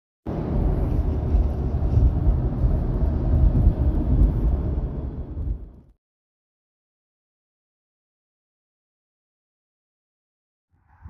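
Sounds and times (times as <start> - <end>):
vehicle rumbling: 0.3 - 6.0.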